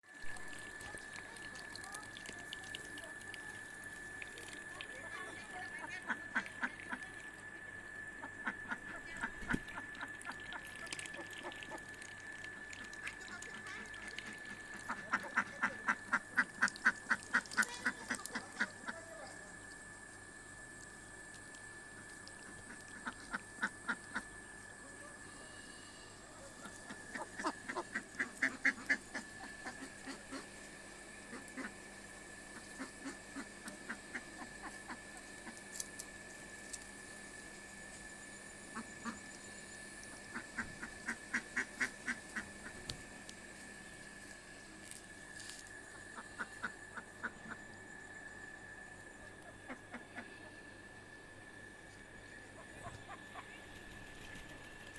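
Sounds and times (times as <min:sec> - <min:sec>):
ducks quacking: 0:05.1 - 0:07.1, 0:08.2 - 0:11.8, 0:13.1 - 0:19.3, 0:22.5 - 0:24.3, 0:26.4 - 0:30.5, 0:31.3 - 0:31.8, 0:32.6 - 0:35.6, 0:38.8 - 0:39.2, 0:40.3 - 0:42.9, 0:49.4 - 0:50.5.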